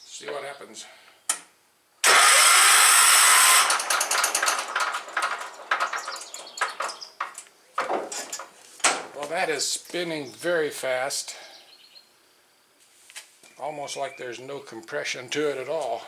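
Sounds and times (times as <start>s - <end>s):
electric starter whirring: 2.0s - 9.0s
engine clattering: 2.0s - 9.1s.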